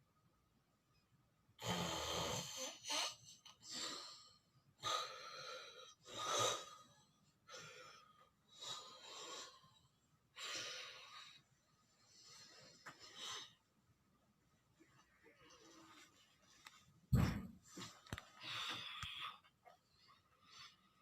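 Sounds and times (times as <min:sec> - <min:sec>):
person snoring: 0:01.6 - 0:03.2.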